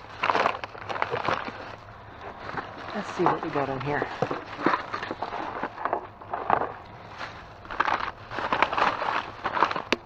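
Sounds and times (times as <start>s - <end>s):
plastic bag crinkling: 0.0s - 10.0s.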